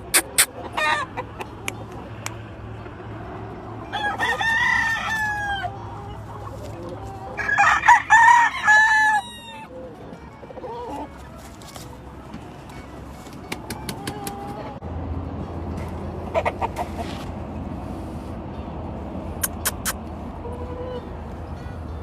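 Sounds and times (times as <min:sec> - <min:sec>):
roosters crowing: 0:00.0 - 0:02.2, 0:03.1 - 0:11.9.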